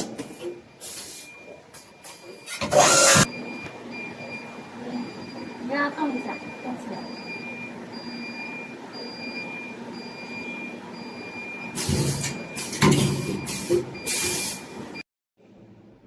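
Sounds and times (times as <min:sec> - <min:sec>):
machine humming with high tone: 0:02.4 - 0:11.6.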